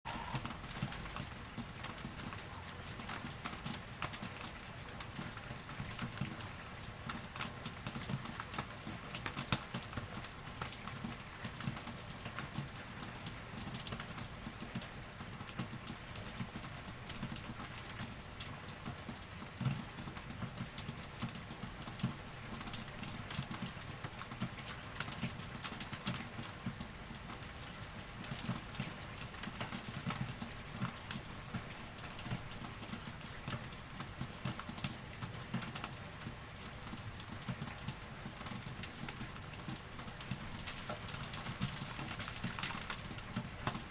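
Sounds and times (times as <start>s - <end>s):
rain hiss: 0.1s - 2.5s
raindrops tapping: 0.4s - 43.9s.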